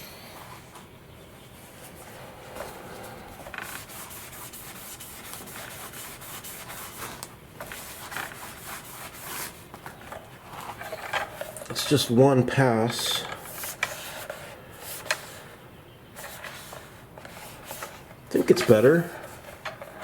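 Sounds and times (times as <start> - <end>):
scratchy polishing rub: 1.5 - 12.0.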